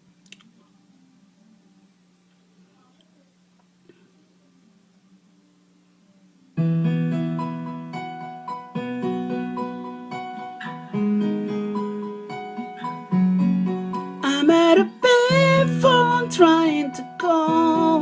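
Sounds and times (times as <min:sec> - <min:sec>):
faint low hum: 0:00.0 - 0:08.6
piano chords and melody: 0:06.6 - 0:18.0.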